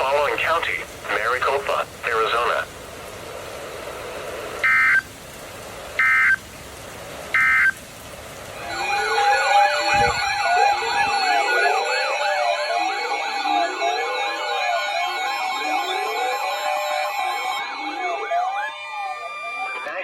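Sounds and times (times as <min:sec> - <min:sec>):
rising and falling alert tone: 0:08.6 - 0:20.0
shrill digital data tones: 0:08.6 - 0:20.0
steady electronic tones: 0:08.6 - 0:20.0.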